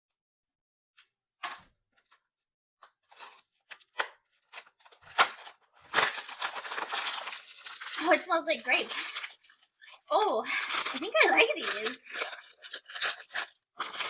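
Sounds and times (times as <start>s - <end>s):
packaging crinkling rustle: 3.0s - 14.0s
packaging crackling: 3.1s - 14.0s.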